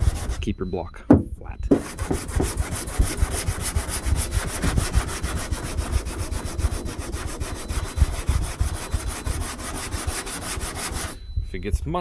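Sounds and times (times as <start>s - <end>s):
sandpaper rubbing on panel: 0.0s - 0.5s, 1.1s - 11.2s.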